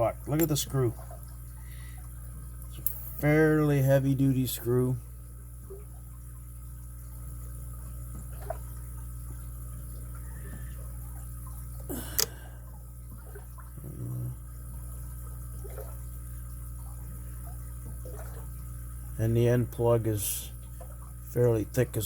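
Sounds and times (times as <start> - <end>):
steady low hum: 0.0 - 22.0
sharp metallic click: 0.3 - 0.6.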